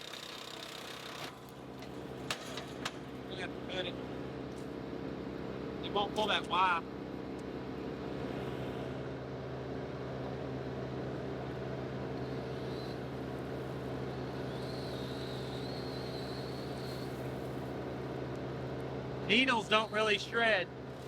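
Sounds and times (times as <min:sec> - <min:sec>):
wood chipper running: 0:00.0 - 0:07.5
faint high whine: 0:12.2 - 0:17.7.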